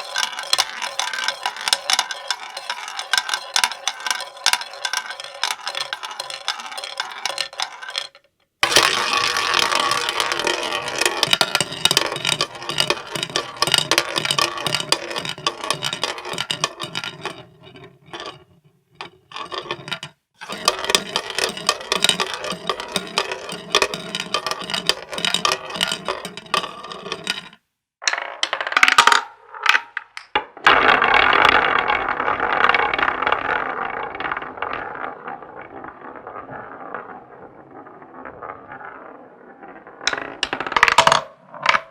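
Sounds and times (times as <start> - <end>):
rapid clinking of coins: 0.0 - 10.6.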